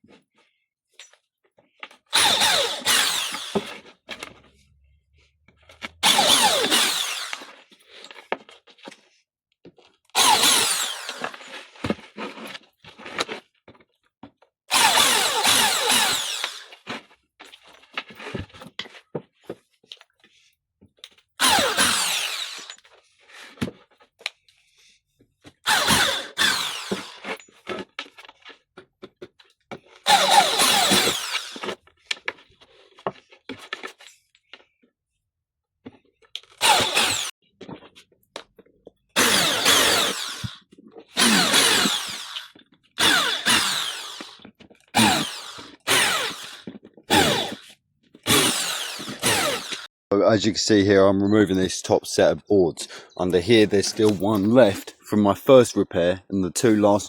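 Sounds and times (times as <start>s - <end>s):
cordless power drill running: 2.1s - 3.9s, 6.0s - 7.6s, 10.2s - 11.6s, 14.7s - 16.8s, 21.4s - 22.8s, 25.7s - 27.4s, 30.0s - 31.8s, 36.5s - 37.3s, 39.2s - 49.9s.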